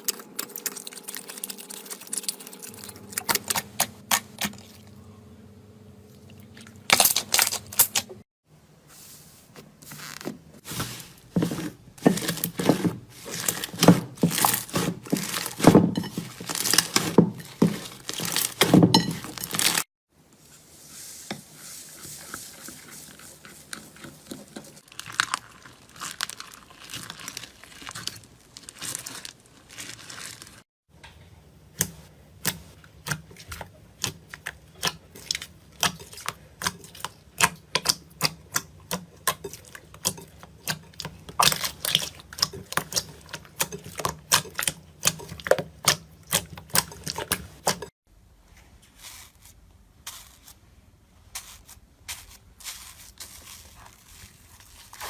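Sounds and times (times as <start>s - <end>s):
crunchy slime crackling and popping: 24.8s - 30.6s.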